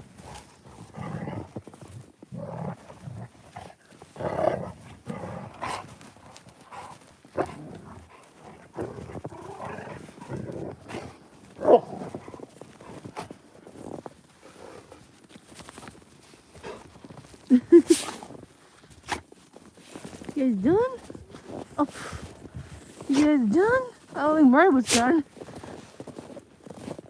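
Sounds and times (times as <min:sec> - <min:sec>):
dogs vocalizing while playing: 0:00.2 - 0:13.4.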